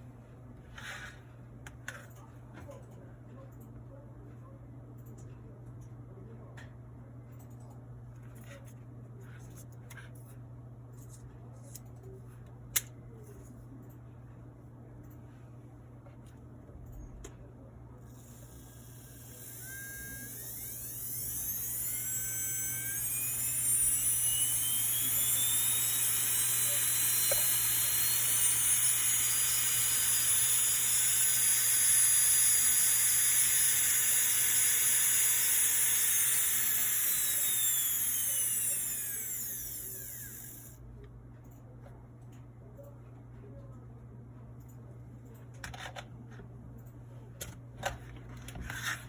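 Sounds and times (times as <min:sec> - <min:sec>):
nail drill whine: 0:18.6 - 0:40.8.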